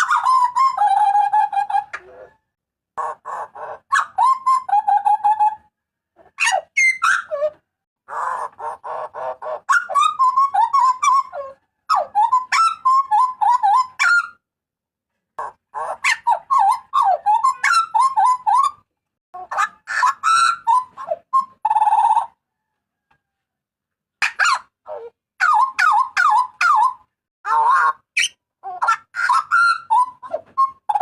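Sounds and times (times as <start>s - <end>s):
bird yelping whistled calls: 6.4s - 14.4s, 15.8s - 18.8s, 19.6s - 22.4s, 25.4s - 31.0s.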